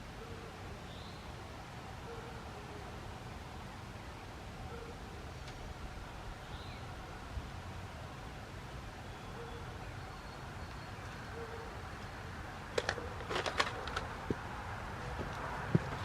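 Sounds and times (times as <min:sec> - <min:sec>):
handling clicks and crackles: 0:12.7 - 0:16.0.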